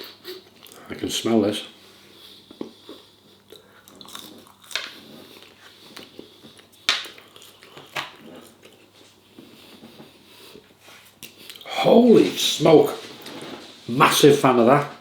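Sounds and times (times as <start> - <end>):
person chewing: 2.2 - 10.6, 11.2 - 11.7.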